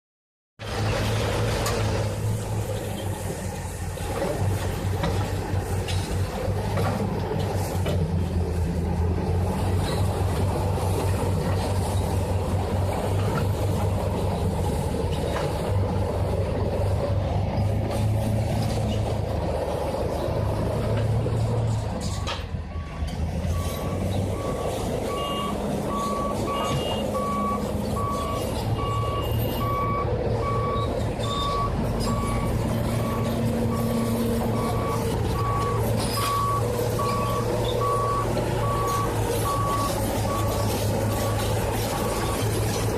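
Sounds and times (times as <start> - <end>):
bulldozer diesel engine running: 0.6 - 42.9
reversing alarm beeping: 22.0 - 42.6.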